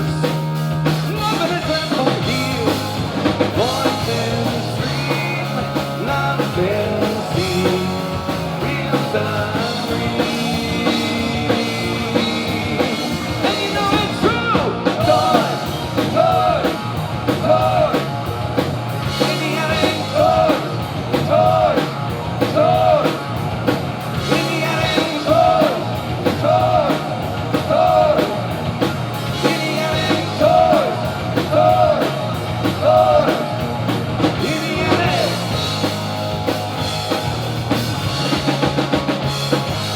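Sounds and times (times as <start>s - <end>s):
repeating guitar riff: 0.0s - 16.1s
person singing: 0.0s - 16.8s, 19.1s - 21.9s, 29.3s - 32.2s, 34.3s - 35.8s
drum kit: 0.0s - 39.9s
rock band playing: 0.0s - 39.9s.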